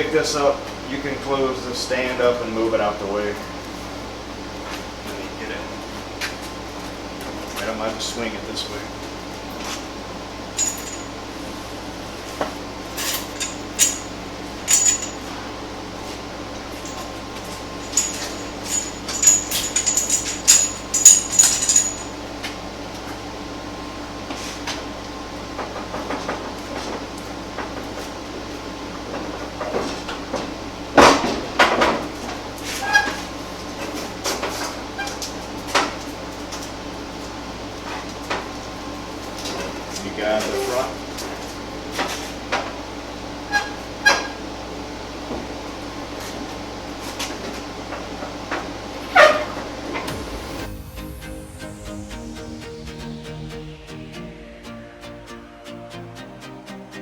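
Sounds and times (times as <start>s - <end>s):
steady hum: 0.0s - 29.4s, 46.8s - 57.0s
sheet metal clinks and knocks: 10.6s - 11.1s, 13.0s - 15.3s, 17.7s - 22.2s.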